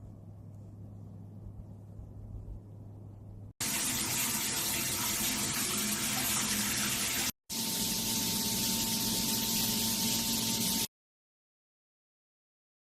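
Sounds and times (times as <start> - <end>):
faint steady hum: 0.0 - 3.6
shower spraying water: 3.6 - 10.9.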